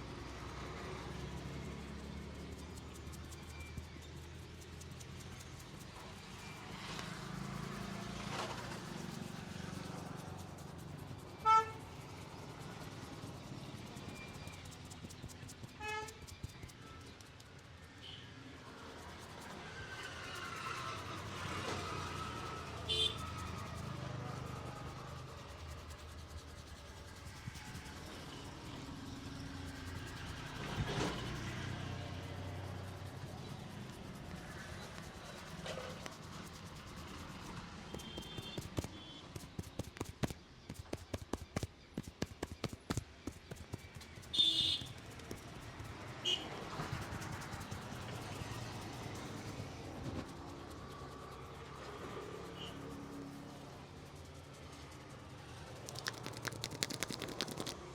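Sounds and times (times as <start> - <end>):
street traffic rumble: 0.0 - 57.9
vehicle horn toots: 11.4 - 11.8, 22.9 - 23.2, 44.4 - 44.9.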